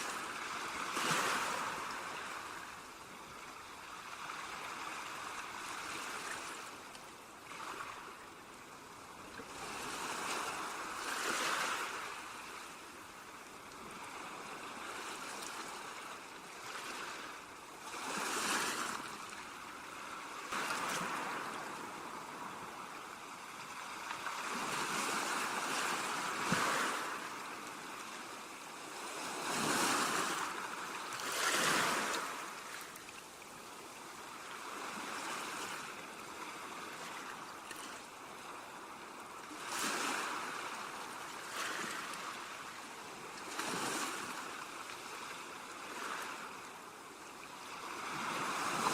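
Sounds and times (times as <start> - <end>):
waves crashing on rocks: 29.0 - 32.8.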